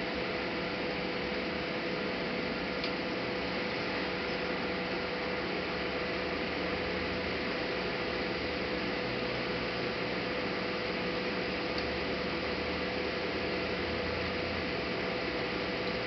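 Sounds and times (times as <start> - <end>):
constant hum: 0.0 - 16.0.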